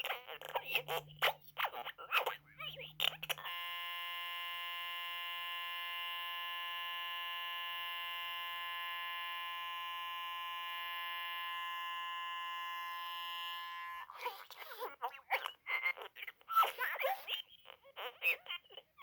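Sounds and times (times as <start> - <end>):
buzzy electronic tone: 3.4 - 14.1.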